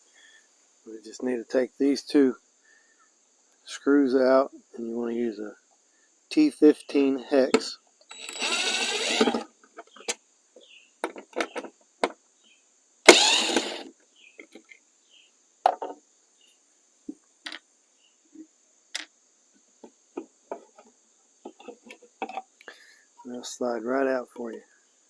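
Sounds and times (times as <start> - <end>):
cordless power driver whirring: 8.1 - 9.4, 13.1 - 13.9.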